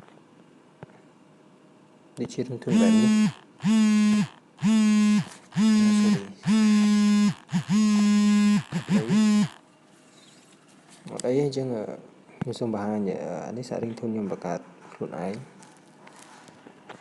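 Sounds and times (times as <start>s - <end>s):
phone ringtone notes: 2.7s - 9.6s.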